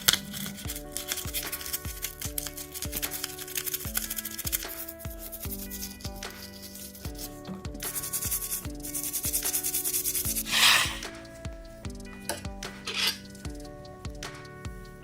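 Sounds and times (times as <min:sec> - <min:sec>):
background music with steady beat: 0:00.0 - 0:15.0
hissing burst: 0:10.5 - 0:11.1
rubbing strokes against a surface: 0:10.5 - 0:11.1.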